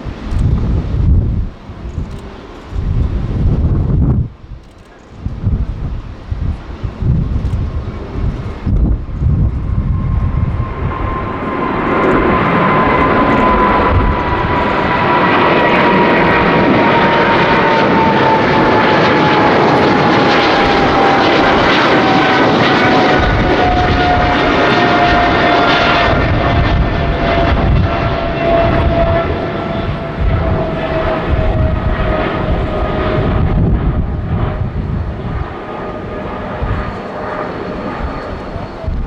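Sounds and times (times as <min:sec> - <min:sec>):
jet engines at takeoff power: 0:00.0 - 0:39.0.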